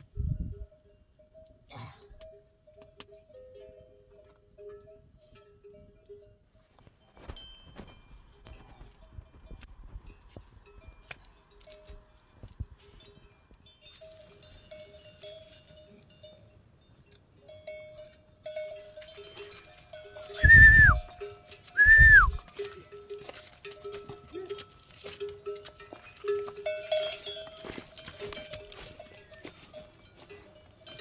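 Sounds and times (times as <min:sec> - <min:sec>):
faint clinking animal bells: 0:00.0 - 0:31.0
loud high-pitched calls: 0:20.4 - 0:21.0.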